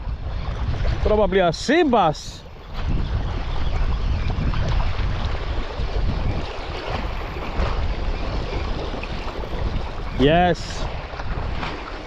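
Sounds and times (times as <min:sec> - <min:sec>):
sea waves washing: 0:00.0 - 0:12.0
wind rumbling on microphone: 0:00.0 - 0:12.0.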